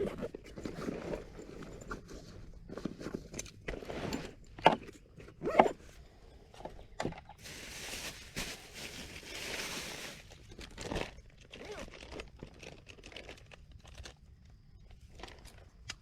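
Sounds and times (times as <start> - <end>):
handling rustles and clicks: 0.0 - 5.9.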